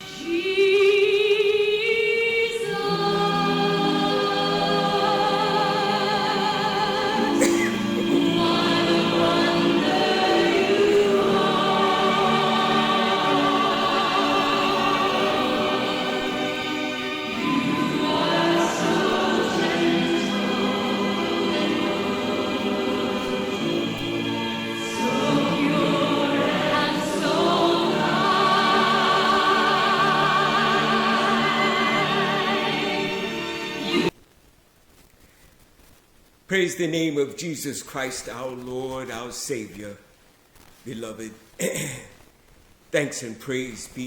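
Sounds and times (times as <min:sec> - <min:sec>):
choir singing held chords: 0:00.0 - 0:34.1.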